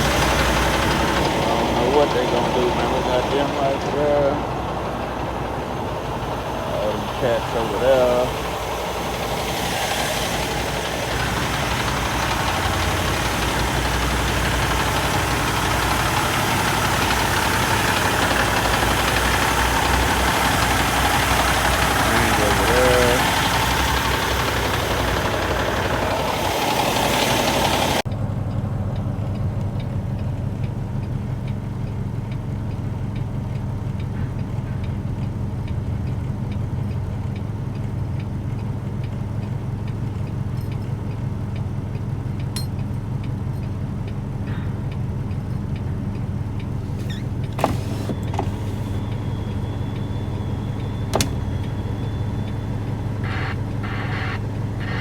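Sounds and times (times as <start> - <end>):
truck engine humming: 0.0 - 55.0
sharp clicks: 46.6 - 55.0.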